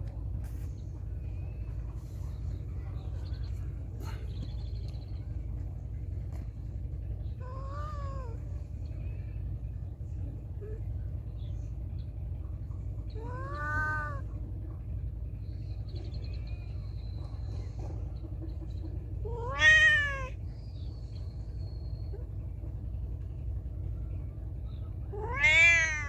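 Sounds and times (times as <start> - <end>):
low hum: 0.0 - 26.0
cat meowing: 7.4 - 8.4, 13.2 - 14.3, 19.3 - 20.4, 25.1 - 26.0.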